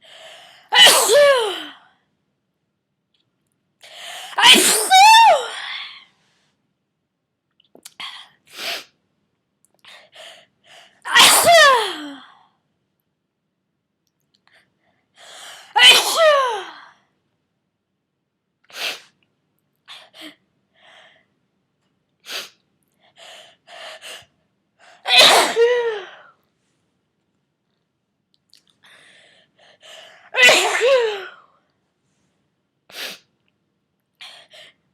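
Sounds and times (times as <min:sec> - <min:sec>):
person sneezing: 0:00.8 - 0:01.6, 0:04.4 - 0:05.3, 0:11.1 - 0:12.0, 0:25.1 - 0:26.1, 0:30.4 - 0:31.3.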